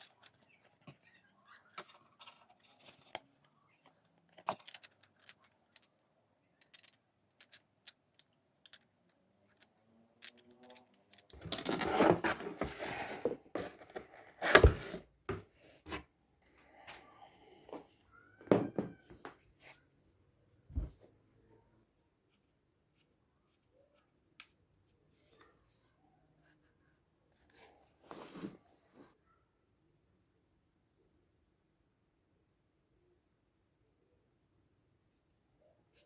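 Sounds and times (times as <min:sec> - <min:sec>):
rustling and scraping: 0:10.3 - 0:16.1, 0:27.6 - 0:29.2.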